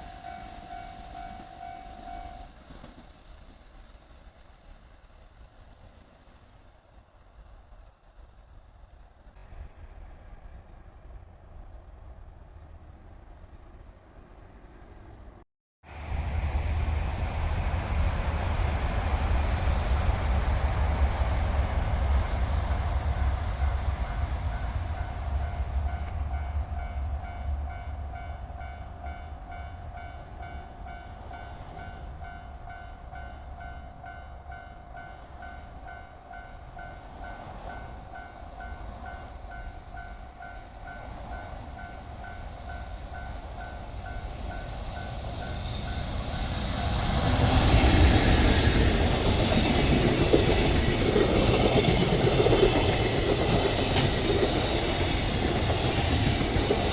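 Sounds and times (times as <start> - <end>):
crossing warning bell ringing: 0.0 - 2.6, 26.4 - 47.2
train rumbling past: 0.0 - 56.9.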